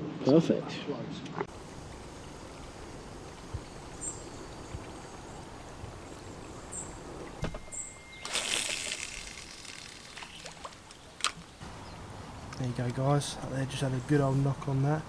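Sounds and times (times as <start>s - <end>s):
water lapping against boat hull: 1.5s - 13.0s
faint high chirps: 6.1s - 12.0s.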